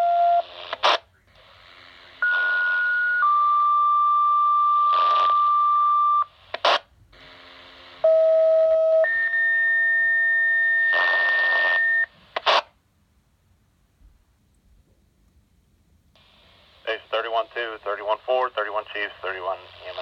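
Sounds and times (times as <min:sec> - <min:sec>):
radio hiss: 0:00.4 - 0:02.8, 0:06.2 - 0:08.0, 0:10.9 - 0:12.8, 0:16.2 - 0:20.0
radio squelch crackle: 0:00.4 - 0:02.8, 0:04.9 - 0:05.6, 0:06.3 - 0:06.9, 0:10.8 - 0:12.8, 0:16.2 - 0:20.0.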